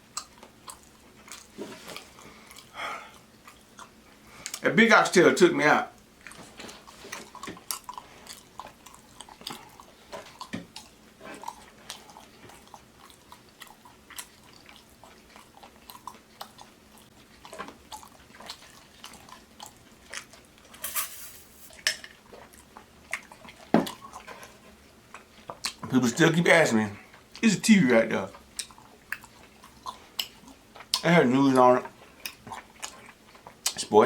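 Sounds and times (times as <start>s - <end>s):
chewing and lip-smacking: 0.0s - 4.6s, 5.9s - 20.8s, 22.2s - 26.0s, 28.2s - 33.9s
brief hiss: 20.8s - 21.8s.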